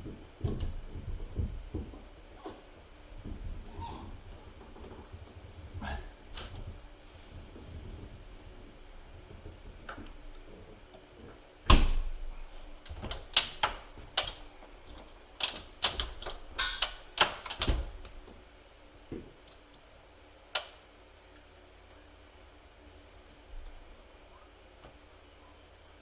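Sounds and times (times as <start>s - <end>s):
tools clicking and knocking: 12.8s - 17.8s.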